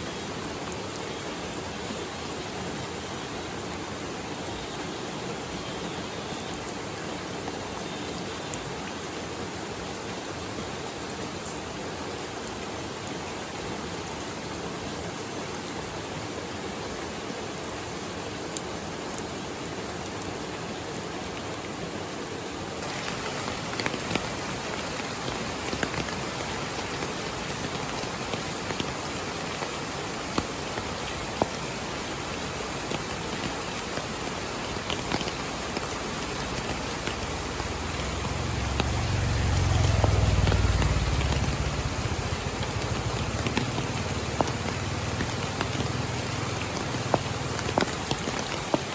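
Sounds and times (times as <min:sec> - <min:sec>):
steady rain hiss: 0:00.0 - 0:48.9
raindrops pattering: 0:00.1 - 0:48.9.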